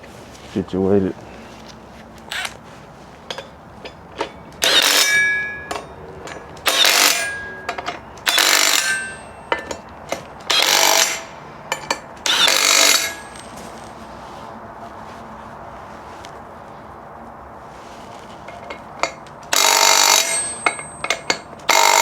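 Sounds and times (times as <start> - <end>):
power tool bursts: 2.3 - 2.6, 4.6 - 5.4, 6.6 - 7.6, 8.2 - 9.3, 10.5 - 11.3, 12.2 - 13.4, 19.5 - 22.0.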